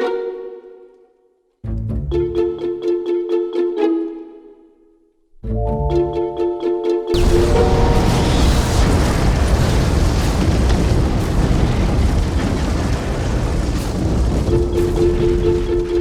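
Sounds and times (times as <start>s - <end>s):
held musical notes: 1.6s - 4.8s, 5.4s - 8.2s
loud rushing rumble: 7.2s - 16.0s.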